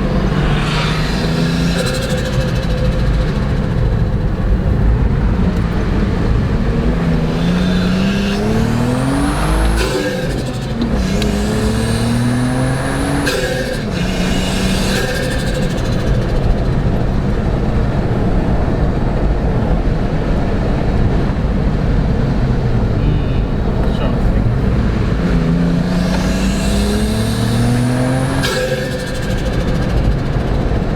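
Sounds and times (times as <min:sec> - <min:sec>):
high turbo whistle: 0:00.0 - 0:04.7, 0:07.0 - 0:17.0, 0:24.9 - 0:30.9
gear change burst: 0:00.0 - 0:17.4, 0:22.4 - 0:30.9
car engine accelerating hard: 0:00.0 - 0:30.9.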